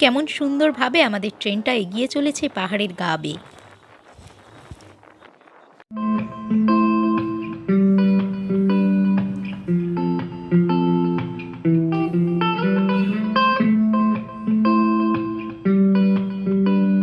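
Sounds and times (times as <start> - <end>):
plucked guitar melody: 5.9 - 17.0.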